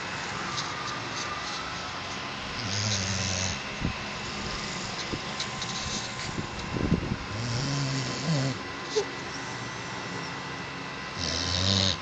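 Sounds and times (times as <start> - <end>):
pet snoring: 2.6 - 3.6, 7.3 - 10.0, 11.1 - 12.0.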